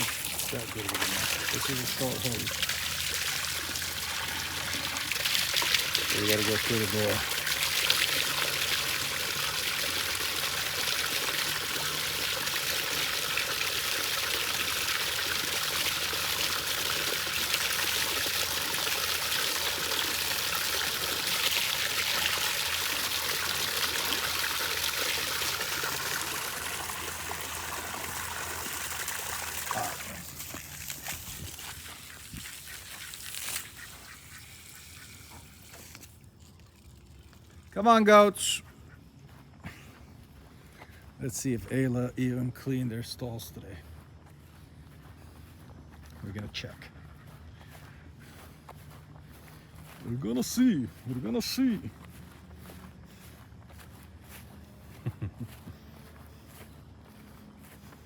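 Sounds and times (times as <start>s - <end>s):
water running from garden hose: 0.0s - 38.6s
ducks quacking: 31.8s - 35.5s.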